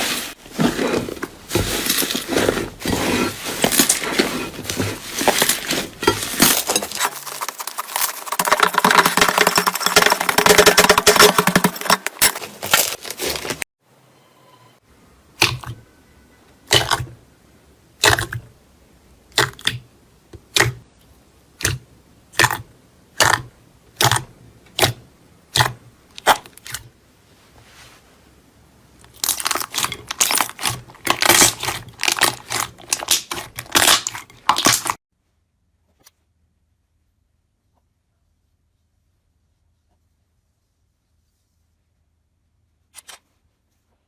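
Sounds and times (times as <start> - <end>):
crunchy material crushed by hand: 0.0 - 13.7, 29.1 - 35.0.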